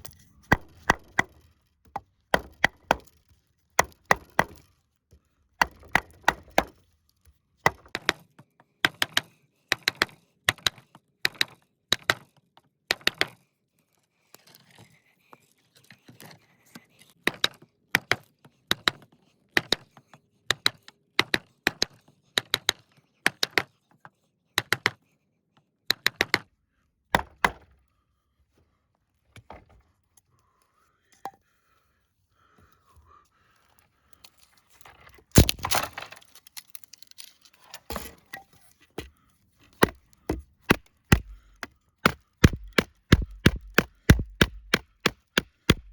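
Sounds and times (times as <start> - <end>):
knife chopping into wood: 0.5 - 1.4, 2.4 - 3.1, 3.8 - 4.6, 39.8 - 45.9.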